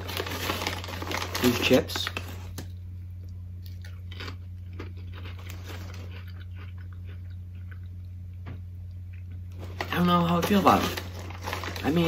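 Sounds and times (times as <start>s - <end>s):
crunching potato chip: 0.0s - 2.7s, 3.6s - 7.9s, 9.5s - 12.0s
low electrical hum: 0.0s - 12.0s.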